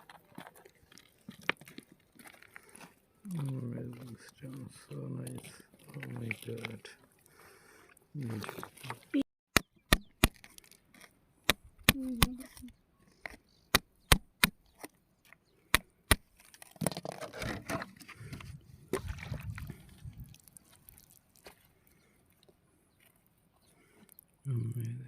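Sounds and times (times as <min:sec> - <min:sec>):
scraping and rustling: 0:16.4 - 0:22.1.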